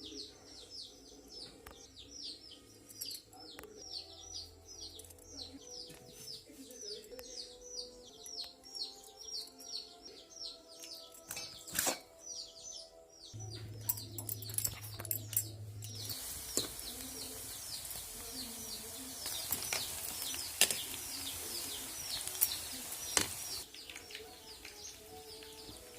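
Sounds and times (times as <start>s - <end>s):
small birds chirping: 0.0s - 25.9s
low hum: 13.4s - 17.6s
steady hiss: 14.5s - 25.9s.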